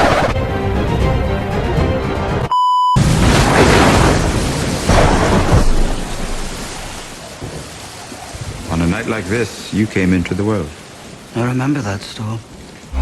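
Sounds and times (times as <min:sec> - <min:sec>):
short electronic beep: 0:02.5 - 0:03.0
heavy rain: 0:03.0 - 0:13.0.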